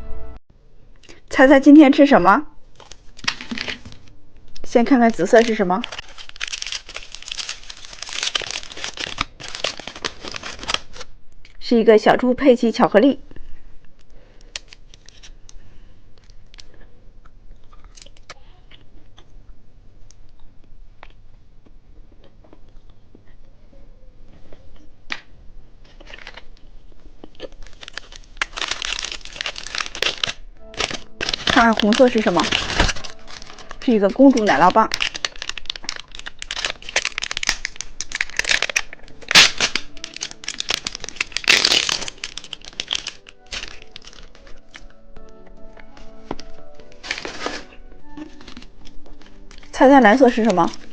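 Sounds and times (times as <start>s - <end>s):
plastic wrapper crinkling: 2.7s - 11.2s, 14.0s - 15.6s, 17.6s - 18.4s, 25.8s - 50.9s
chewing candy: 16.2s - 19.5s, 26.0s - 45.0s.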